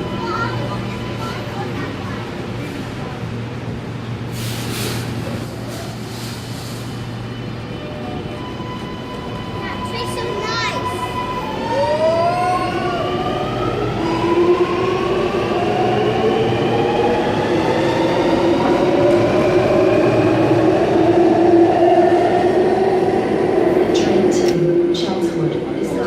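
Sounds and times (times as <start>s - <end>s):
train rumble: 0.0s - 26.0s.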